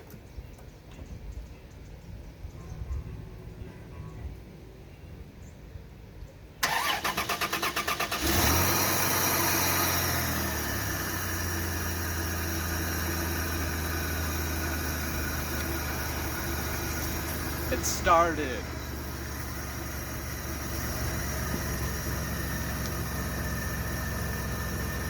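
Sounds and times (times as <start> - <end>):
engine cranking on starter: 6.6 - 25.0
engine idling: 6.6 - 25.0.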